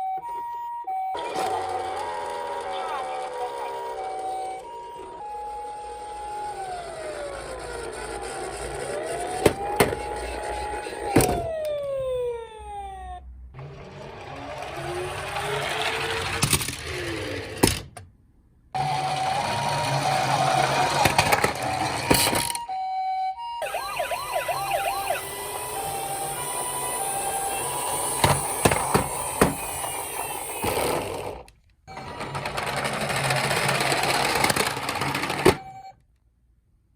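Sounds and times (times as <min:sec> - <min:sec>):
toy electronic siren: 0:00.0 - 0:13.3, 0:18.8 - 0:35.9
toy car rushing and clicking: 0:01.2 - 0:11.7, 0:13.6 - 0:18.0, 0:18.8 - 0:22.6, 0:24.1 - 0:35.8
rising and falling wail: 0:01.2 - 0:16.4, 0:18.8 - 0:22.1, 0:23.4 - 0:31.1.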